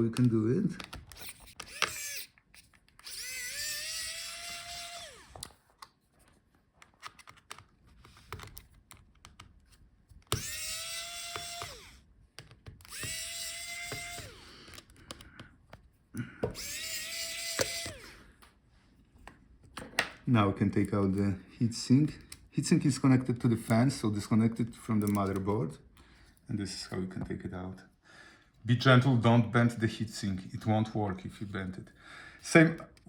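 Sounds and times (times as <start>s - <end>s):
electric screwdriver whine: 1.1s - 2.4s, 3.0s - 5.5s, 10.3s - 12.0s, 12.8s - 14.8s, 16.5s - 18.2s
light handling clicks and taps: 25.0s - 25.6s.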